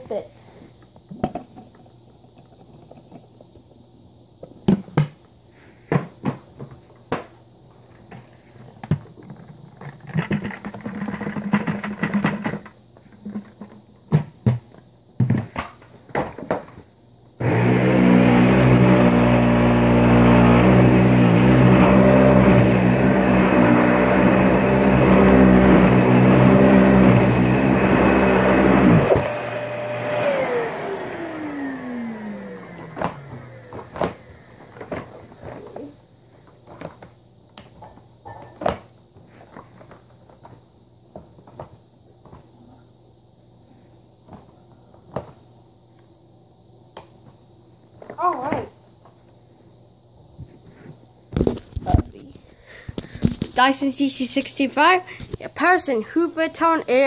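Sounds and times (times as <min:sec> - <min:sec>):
vacuum cleaner motor running: 0:17.4 - 0:35.9.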